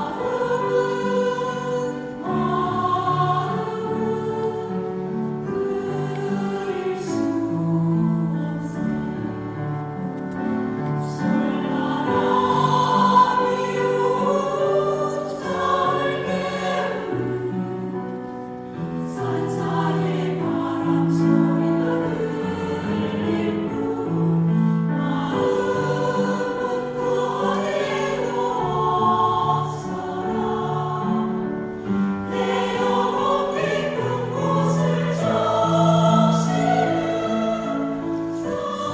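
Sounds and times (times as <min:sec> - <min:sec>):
choir singing a hymn: 0:00.0 - 0:38.9.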